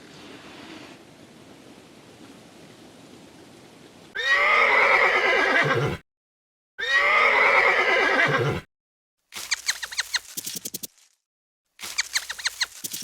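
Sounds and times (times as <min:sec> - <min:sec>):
horse whinnying: 0:04.2 - 0:06.0, 0:06.8 - 0:08.7.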